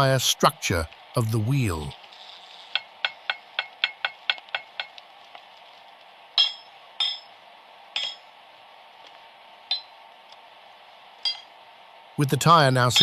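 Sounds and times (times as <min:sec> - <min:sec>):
faint hiss: 0:00.0 - 0:13.0
hammer on metal: 0:06.4 - 0:07.3, 0:08.0 - 0:08.3.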